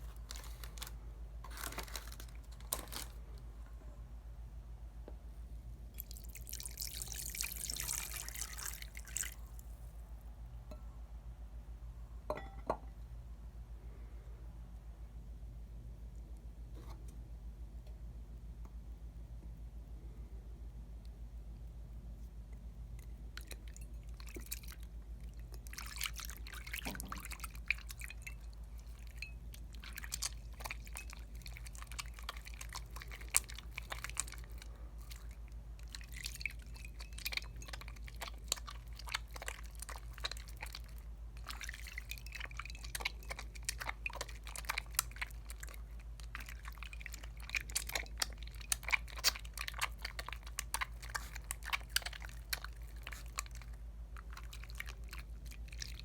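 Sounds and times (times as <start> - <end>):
steady low hum: 0.0 - 56.0
soap lathering between wet hands: 6.0 - 9.9, 25.4 - 56.0.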